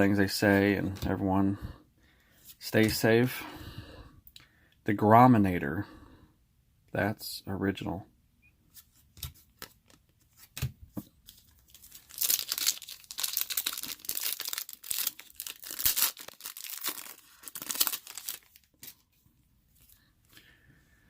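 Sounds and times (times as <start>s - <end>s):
wrapper tearing and crinkling: 11.3s - 19.0s.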